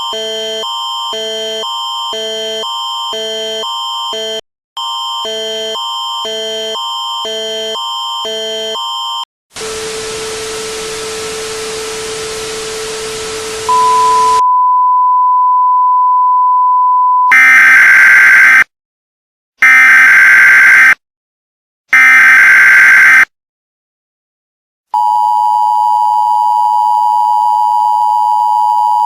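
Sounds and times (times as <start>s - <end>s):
static hiss: 9.6s - 14.4s.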